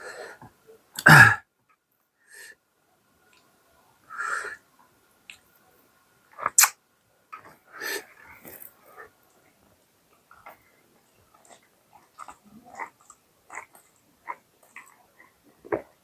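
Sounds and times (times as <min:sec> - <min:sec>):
person eating mouth noises: 0:06.4 - 0:06.8, 0:11.3 - 0:16.0.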